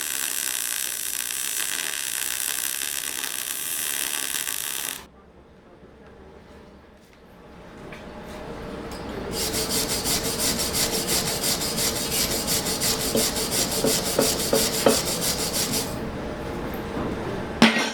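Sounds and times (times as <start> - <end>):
welder hum: 0.0 - 5.1, 9.3 - 16.0
welding arc crackling: 0.0 - 5.1.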